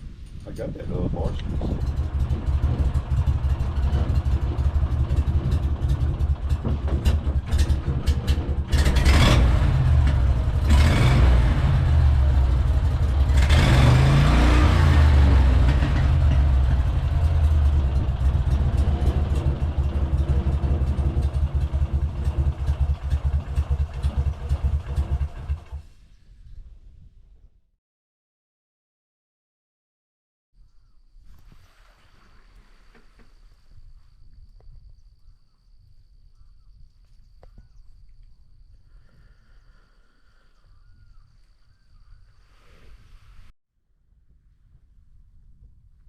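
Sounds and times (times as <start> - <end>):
vehicle engine running: 0.6 - 25.9.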